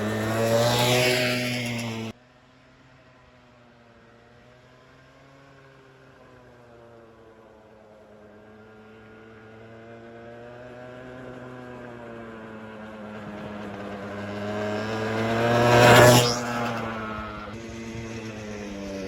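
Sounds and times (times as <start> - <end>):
vehicle engine passing by: 0.0 - 2.2, 8.2 - 19.0.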